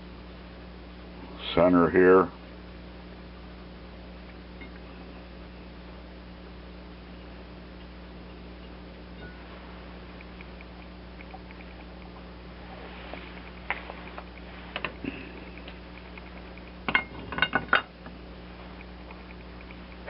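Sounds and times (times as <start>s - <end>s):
metal tools clanking: 16.9s - 17.9s.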